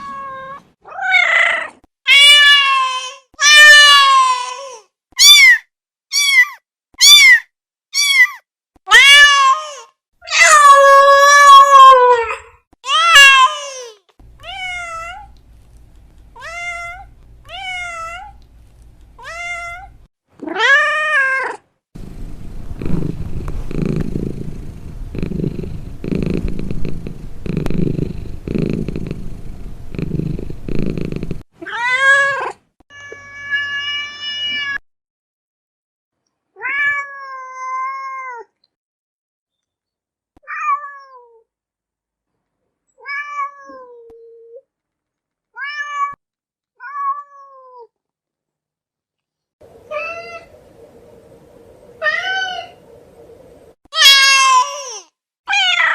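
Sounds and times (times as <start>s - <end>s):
low pulsing rumble: 22.0s - 31.4s
cats meowing: 49.8s - 50.6s, 52.0s - 52.8s, 54.0s - 55.9s.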